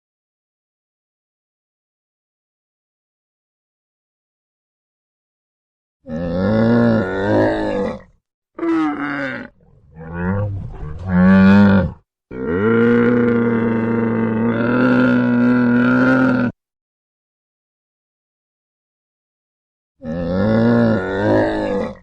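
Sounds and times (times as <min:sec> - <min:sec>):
large animal calling: 0:08.6 - 0:16.5.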